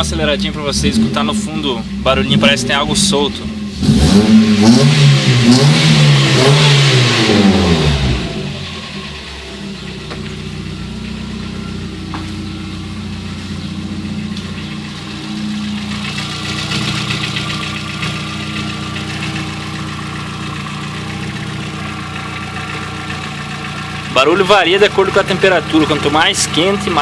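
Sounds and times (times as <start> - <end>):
car engine idling: 0.0 - 27.0
light clacking inside engine: 8.8 - 27.0.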